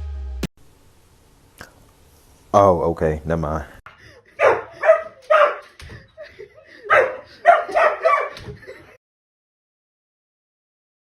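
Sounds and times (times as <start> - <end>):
dog barking: 4.4 - 5.8, 6.8 - 8.5.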